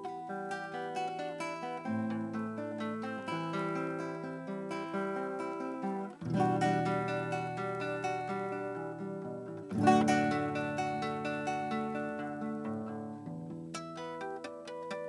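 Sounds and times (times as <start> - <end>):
acoustic guitar playing: 0.0 - 15.0.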